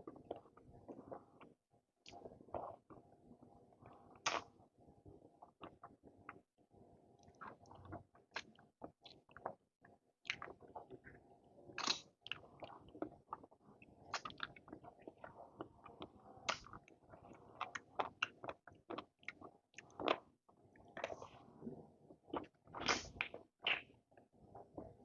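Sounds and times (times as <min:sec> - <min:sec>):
person chewing with wet mouth sounds: 0:00.1 - 0:03.1, 0:03.8 - 0:04.6, 0:05.4 - 0:06.4, 0:07.2 - 0:25.0
sharp smacks and crunches: 0:22.8 - 0:23.9.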